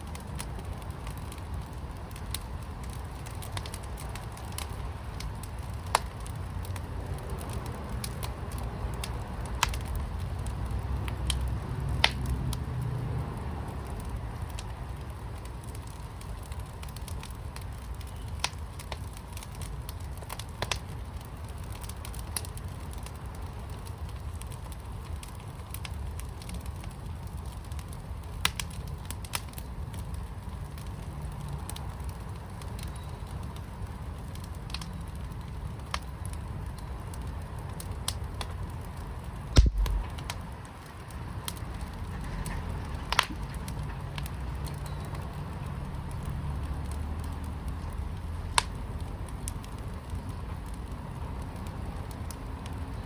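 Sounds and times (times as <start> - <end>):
wood fire crackling: 0.0 - 53.0
loud thump: 39.6 - 40.2.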